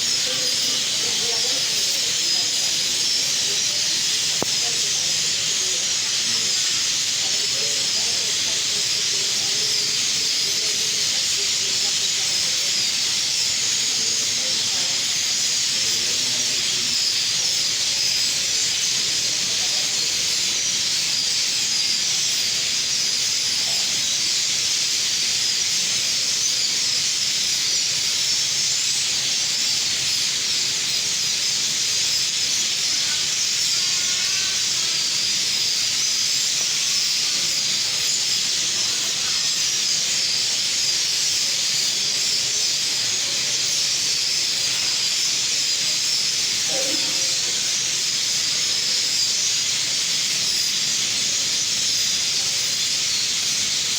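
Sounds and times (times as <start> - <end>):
chorus of birds chirping: 0.0 - 53.9.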